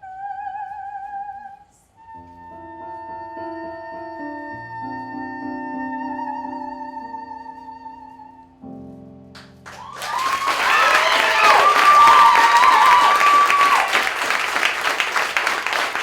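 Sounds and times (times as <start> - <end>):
woman singing high note with vibrato: 0.0 - 8.5
piano accompaniment: 2.2 - 16.0
audience applause and cheering: 9.7 - 16.0.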